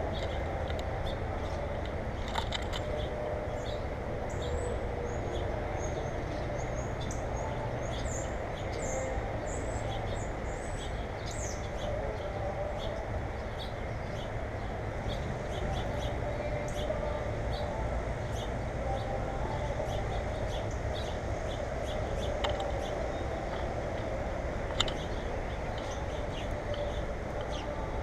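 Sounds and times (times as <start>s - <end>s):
small birds chirping: 0.0s - 28.0s
steady low rumble: 0.0s - 28.0s.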